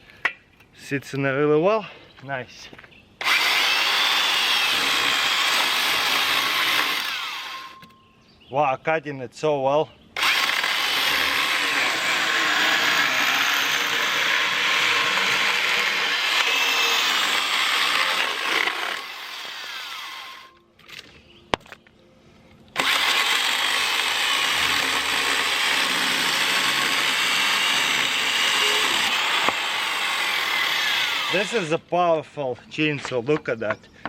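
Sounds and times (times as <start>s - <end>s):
electric chainsaw cutting wood: 3.2s - 7.8s, 10.2s - 20.6s, 22.8s - 31.7s.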